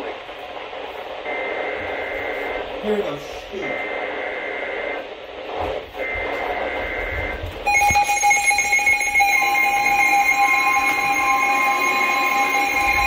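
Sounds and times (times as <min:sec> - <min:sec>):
buzzy digital data bursts: 0:06.0 - 0:13.0
electronic attention tone: 0:06.0 - 0:13.0.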